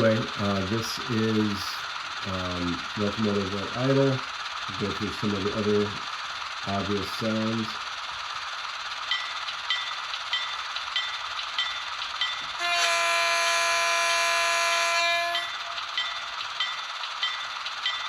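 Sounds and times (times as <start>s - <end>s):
diesel idle hiss with ticking: 0.0s - 18.0s
locomotive horn blast: 12.6s - 15.8s.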